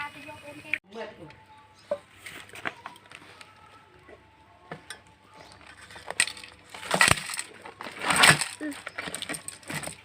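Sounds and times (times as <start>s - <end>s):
light clinks and knocks: 4.8s - 10.0s.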